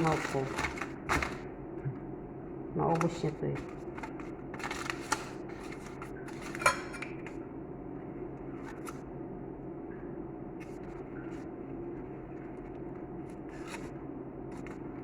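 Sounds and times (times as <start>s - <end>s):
steady low hum: 0.0s - 15.0s
metal utensil scraping dish: 6.4s - 7.1s.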